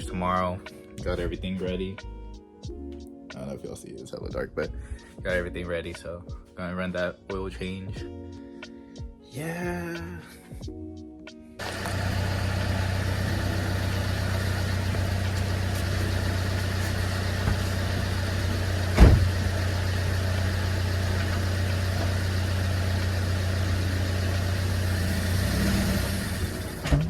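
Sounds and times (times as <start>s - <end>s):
car engine idling: 11.6s - 27.0s.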